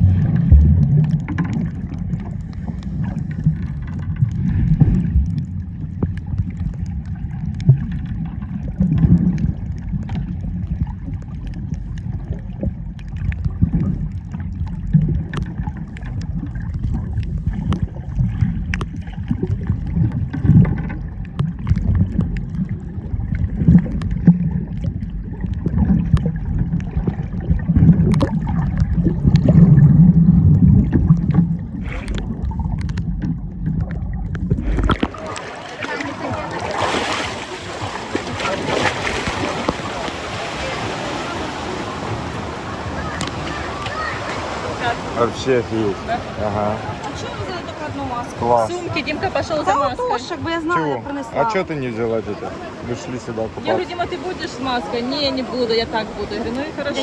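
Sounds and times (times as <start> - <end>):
small crackles and knocks: 0.0 - 36.6
underwater sea sloshing: 0.0 - 57.0.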